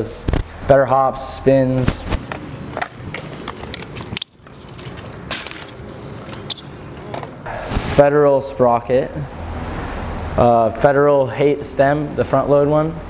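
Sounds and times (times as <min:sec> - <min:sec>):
bike tyres rolling on hard ground: 0:00.2 - 0:08.0
bike clicks and knocks: 0:01.7 - 0:07.5.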